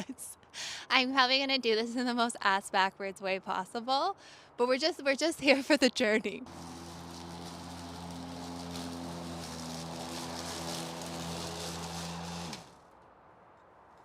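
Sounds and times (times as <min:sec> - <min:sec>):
lawn mower running: 0:06.5 - 0:12.8
mower blade spinning down: 0:06.5 - 0:12.8.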